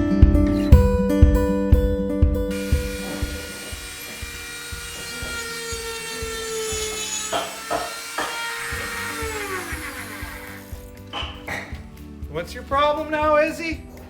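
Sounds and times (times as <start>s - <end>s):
background music: 0.0s - 14.0s
power saw cutting wood: 2.5s - 11.1s.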